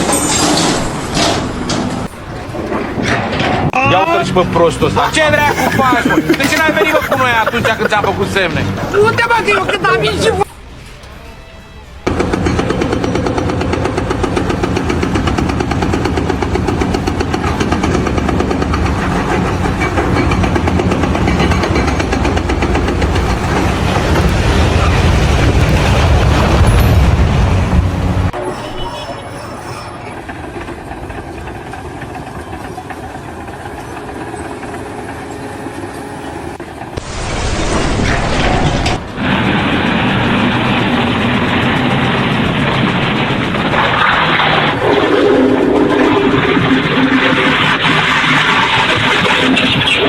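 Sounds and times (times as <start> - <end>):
heavy machinery rumbling: 0.0 - 50.0
quieter steady machine noise: 10.6 - 24.6.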